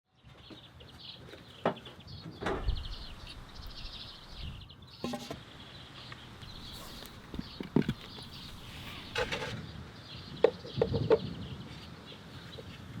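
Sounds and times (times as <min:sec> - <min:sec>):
small birds chirping: 0:00.2 - 0:10.8
birds pecking at feeder: 0:06.4 - 0:09.6.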